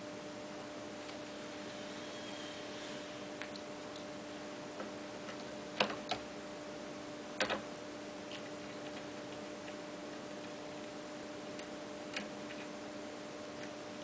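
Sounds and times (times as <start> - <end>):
steady low hum: 0.0 - 14.0
sharp clicks and knocks: 4.8 - 6.2, 7.4 - 7.7.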